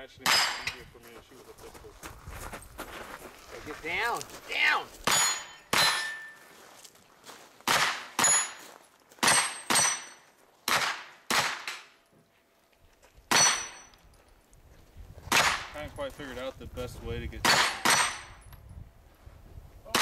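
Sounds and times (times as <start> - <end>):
steel targets ringing: 5.1 - 6.4, 8.2 - 8.6, 9.3 - 10.2, 13.3 - 14.0
gunshots: 7.6 - 8.6, 9.2 - 11.9, 15.3 - 15.8, 17.4 - 18.3.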